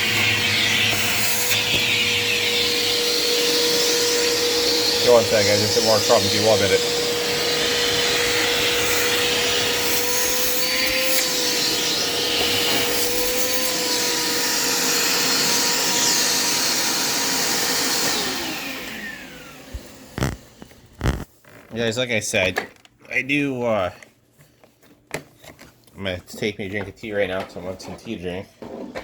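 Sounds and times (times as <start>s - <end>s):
vacuum cleaner motor whine: 0.0s - 21.3s.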